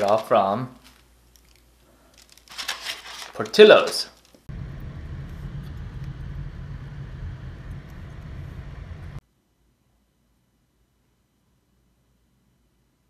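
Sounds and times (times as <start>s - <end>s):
road vehicle rumble: 4.5s - 9.2s.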